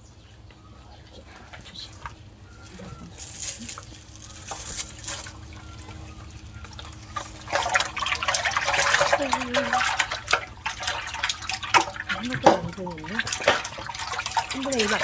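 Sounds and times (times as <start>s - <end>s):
water splashing and sloshing: 1.2s - 15.0s.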